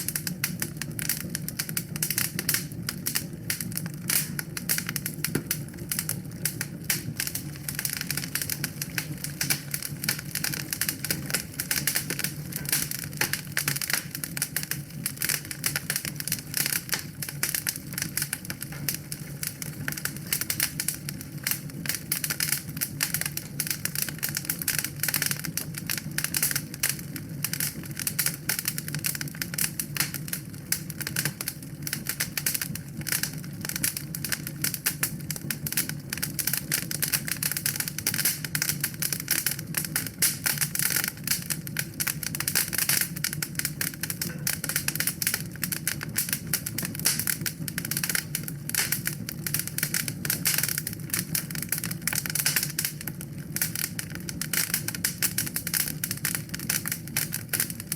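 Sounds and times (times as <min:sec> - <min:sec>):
low fire rumble: 0:00.0 - 0:57.9
wood fire crackling: 0:00.0 - 0:57.9.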